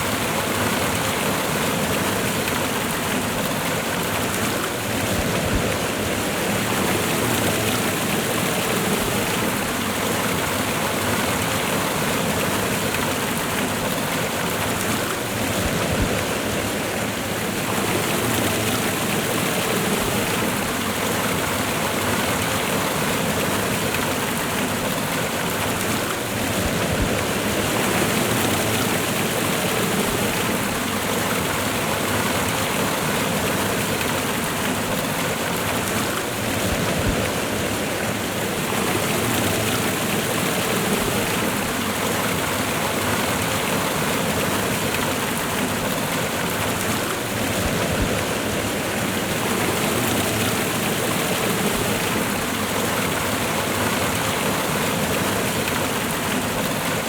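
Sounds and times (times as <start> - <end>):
waterfall and river rushing: 0.0 - 57.0.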